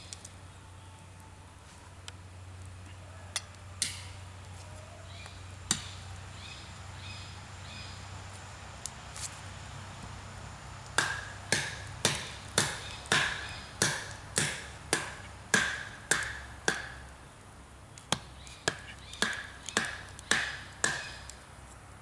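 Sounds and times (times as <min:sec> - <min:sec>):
sharp chopping strikes: 0:11.0 - 0:17.1, 0:18.1 - 0:21.3.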